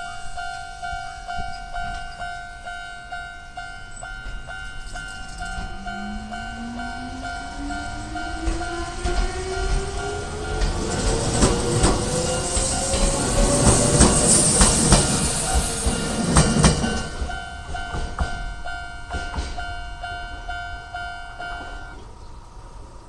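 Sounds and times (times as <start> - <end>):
level crossing bell ringing: 0.0 - 8.8
electric train whine: 0.0 - 23.0
train wheels clacking over rail joints: 4.0 - 19.8.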